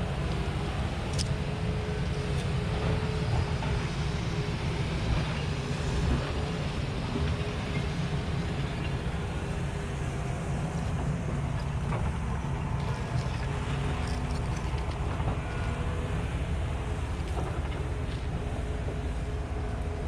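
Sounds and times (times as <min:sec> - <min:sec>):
heavy machinery engine rumble: 0:00.0 - 0:20.0.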